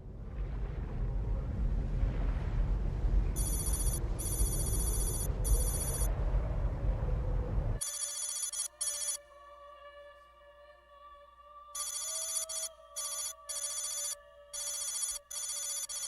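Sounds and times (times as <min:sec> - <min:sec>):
loud low rumble: 0:00.0 - 0:07.8
trilling electronic ring: 0:03.4 - 0:06.1, 0:11.8 - 0:16.0
faint steady tones: 0:03.4 - 0:16.0.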